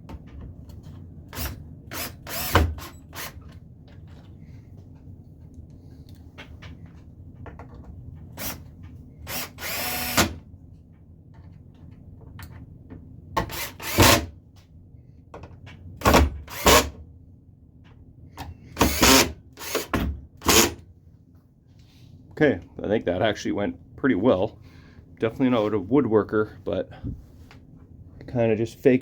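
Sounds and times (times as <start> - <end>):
cordless drill driving screws: 1.4 - 3.4, 9.3 - 10.4, 13.5 - 14.3, 16.5 - 16.9, 18.8 - 20.8.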